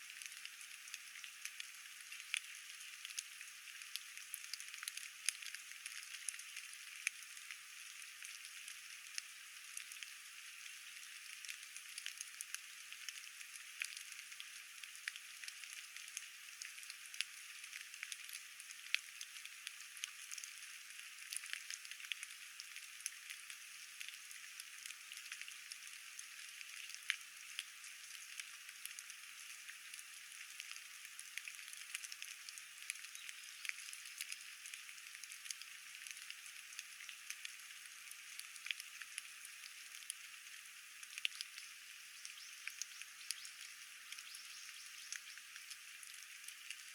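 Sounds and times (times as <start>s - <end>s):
rain hiss: 0.0s - 46.9s.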